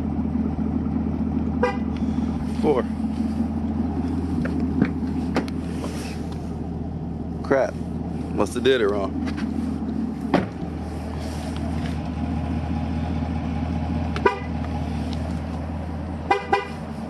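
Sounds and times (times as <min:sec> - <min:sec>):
car engine idling: 0:00.0 - 0:17.0
car horn chirps: 0:01.6 - 0:02.1, 0:14.2 - 0:14.6, 0:16.2 - 0:16.9.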